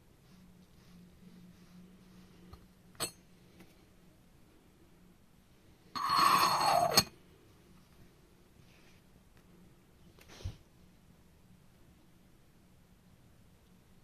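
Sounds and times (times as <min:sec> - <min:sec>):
ceramic clink: 0:06.0 - 0:07.1.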